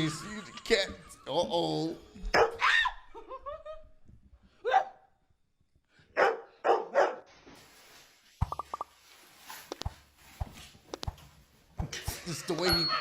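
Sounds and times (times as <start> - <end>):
dog barking: 2.3 - 2.6, 6.2 - 7.3.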